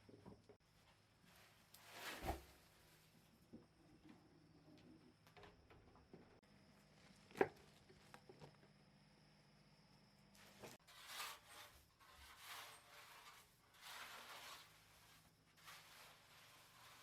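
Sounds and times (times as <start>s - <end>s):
soft scraping strokes: 10.4s - 17.0s.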